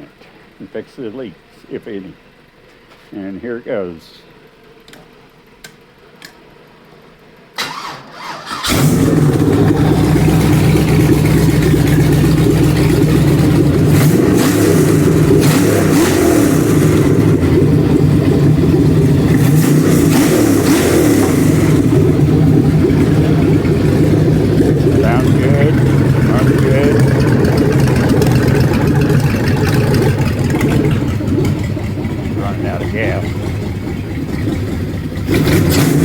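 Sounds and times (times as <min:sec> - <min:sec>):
engine cranking on starter: 0:07.6 - 0:36.0
engine running loudly: 0:08.6 - 0:36.0.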